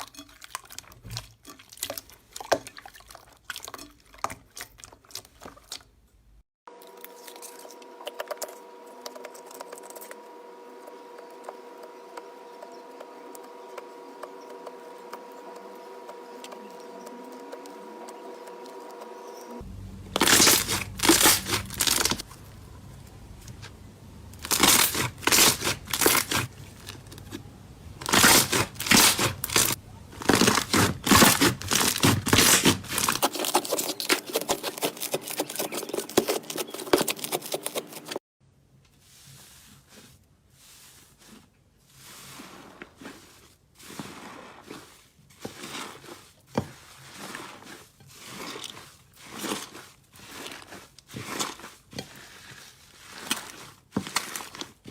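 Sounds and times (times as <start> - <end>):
slime soft squishes: 38.9 - 54.9.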